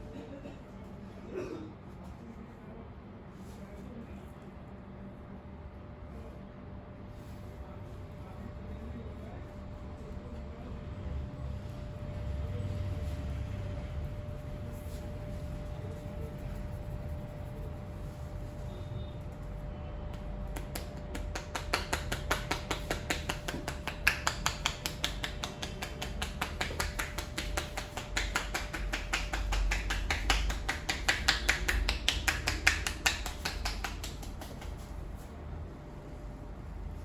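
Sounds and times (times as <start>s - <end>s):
hands tapping on a head: 20.1s - 35.0s.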